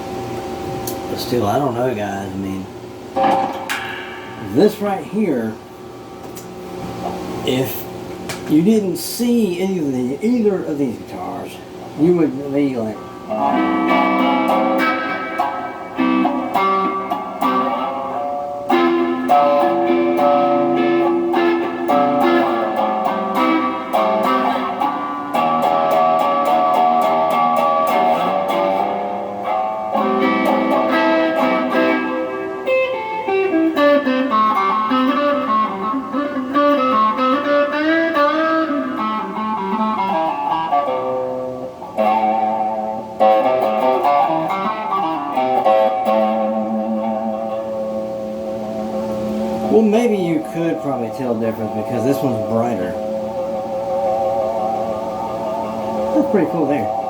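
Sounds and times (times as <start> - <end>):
electric guitar through amplifier: 0.0 - 57.0.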